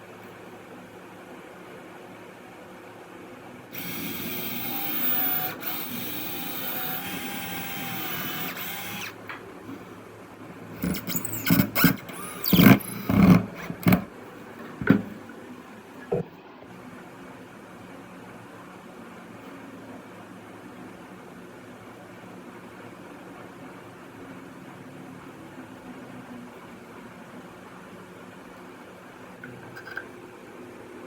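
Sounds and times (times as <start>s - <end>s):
electric drill running: 3.7s - 9.2s, 10.8s - 14.1s.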